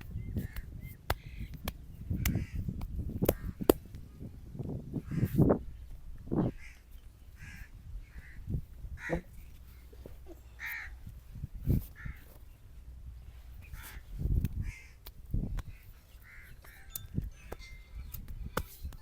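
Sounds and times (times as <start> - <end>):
hand slaps on head: 0.0 - 4.0
bird calling: 6.4 - 11.1.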